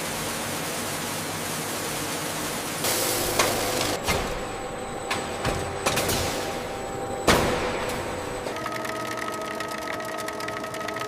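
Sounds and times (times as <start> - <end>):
factory machinery hiss: 0.0 - 8.2.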